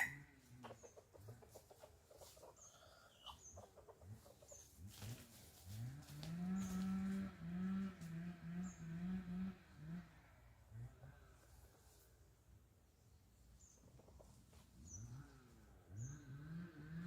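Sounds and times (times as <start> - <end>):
hen clucking: 0.0 - 4.8
chicks peeping: 0.5 - 5.2.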